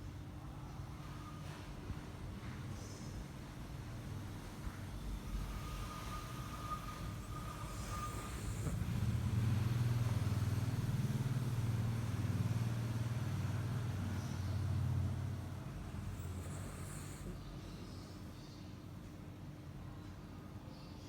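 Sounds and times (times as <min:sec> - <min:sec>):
person snoring: 0:07.6 - 0:09.4, 0:15.9 - 0:17.4.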